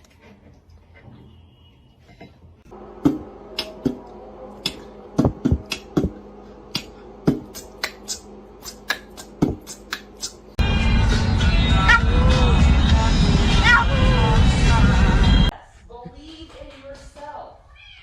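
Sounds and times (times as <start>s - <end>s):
low steady hum: 0.6s - 16.0s
loud music: 7.3s - 15.5s.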